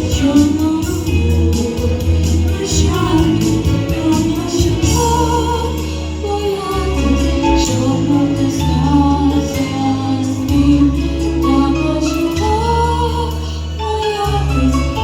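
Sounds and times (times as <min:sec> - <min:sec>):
instrumental accompaniment: 0:00.0 - 0:15.0.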